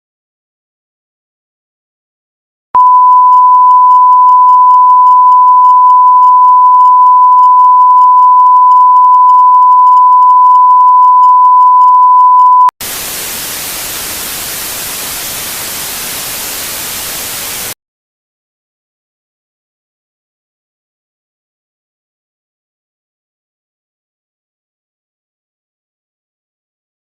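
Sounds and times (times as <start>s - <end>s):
hissing static: 12.8s - 17.8s.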